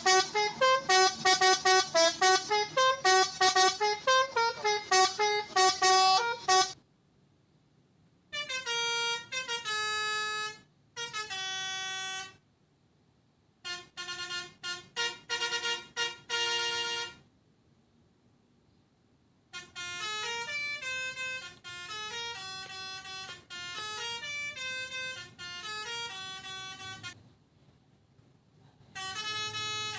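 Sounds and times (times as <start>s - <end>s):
melodica playing horn phrases: 0.0s - 6.8s, 8.4s - 12.3s, 13.7s - 17.2s, 19.6s - 27.2s, 29.0s - 29.9s.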